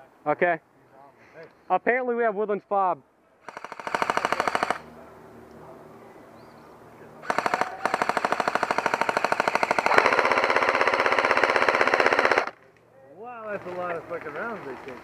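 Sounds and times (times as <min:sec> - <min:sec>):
airsoft gun firing full auto: 0:03.5 - 0:04.9, 0:07.2 - 0:12.6.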